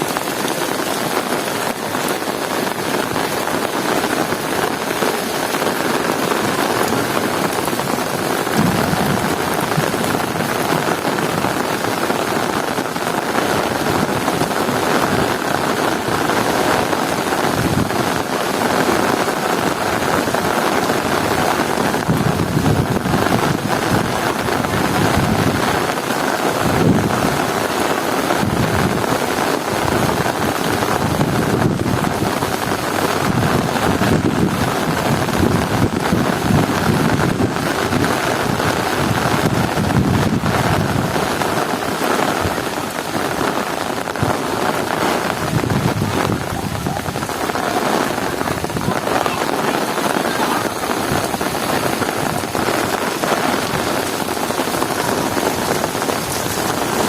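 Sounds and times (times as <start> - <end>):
heavy rain pouring: 0.0 - 57.0
low rumbling: 7.0 - 11.4.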